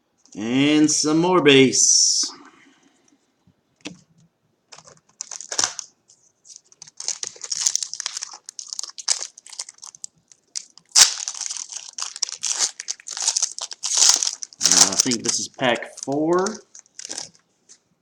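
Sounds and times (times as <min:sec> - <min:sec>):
foil wrapper crinkling and tearing: 0:04.7 - 0:05.9, 0:06.5 - 0:17.5
sharp loud crackle: 0:10.9 - 0:11.6.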